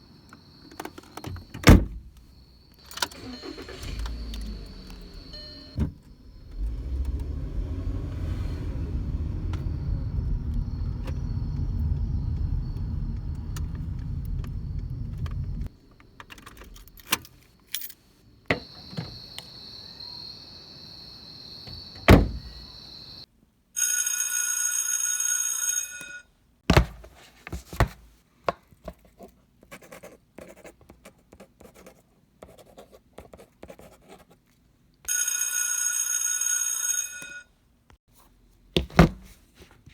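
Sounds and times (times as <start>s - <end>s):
engine running low rumble: 3.1s - 17.0s
bell-like ringing: 35.1s - 37.4s.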